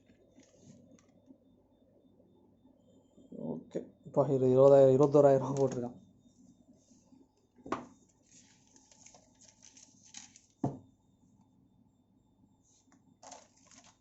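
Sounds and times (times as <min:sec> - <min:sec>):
packaging rustling: 0:08.1 - 0:10.6, 0:13.2 - 0:14.0.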